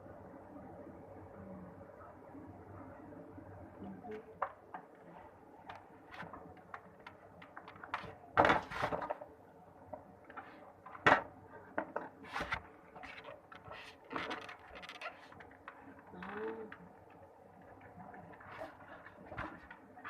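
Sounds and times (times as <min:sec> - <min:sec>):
objects knocking and clattering: 0:06.2 - 0:09.3, 0:09.9 - 0:16.6.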